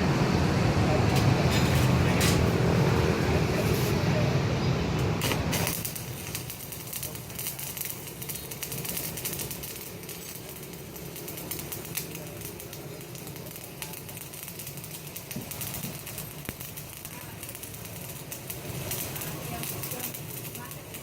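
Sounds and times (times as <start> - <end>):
electric welding arc crackling: 5.1 - 21.0.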